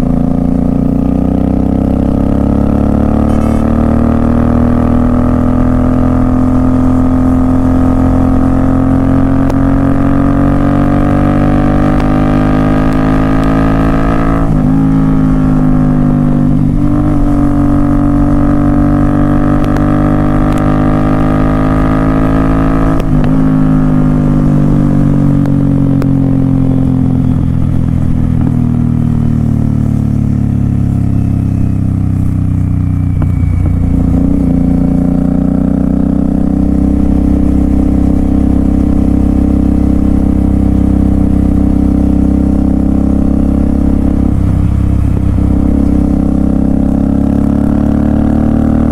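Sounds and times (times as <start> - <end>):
motorcycle engine drone: 0.0 - 48.9.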